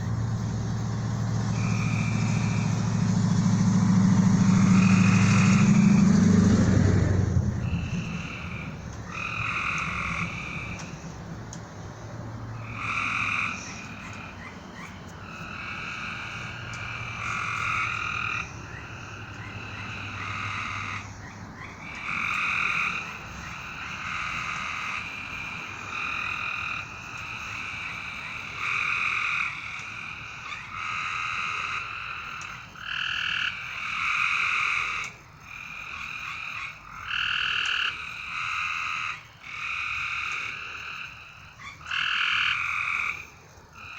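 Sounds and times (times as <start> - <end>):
frogs calling: 0.0 - 43.9.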